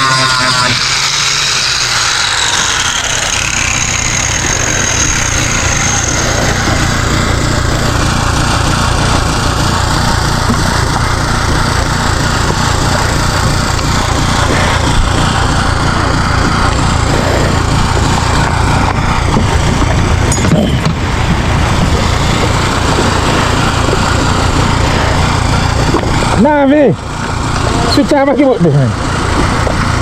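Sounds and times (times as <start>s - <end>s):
generator engine drone: 0.0s - 30.0s
high-pitched whine: 0.0s - 30.0s.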